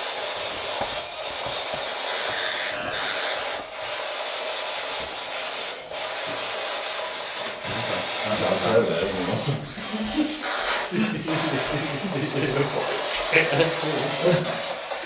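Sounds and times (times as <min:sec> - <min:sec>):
radio static hiss: 0:07.3 - 0:15.0.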